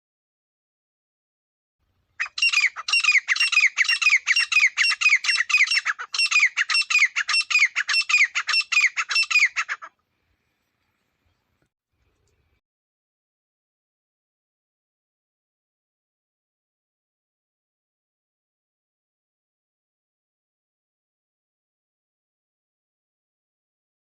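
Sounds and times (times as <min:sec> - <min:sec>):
francolin calling: 0:02.2 - 0:09.9.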